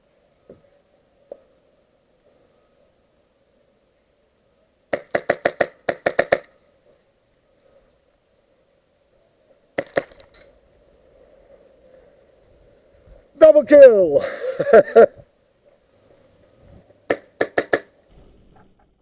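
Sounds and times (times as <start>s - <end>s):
airsoft gun firing: 4.9s - 6.6s, 9.8s - 10.4s, 17.1s - 18.0s.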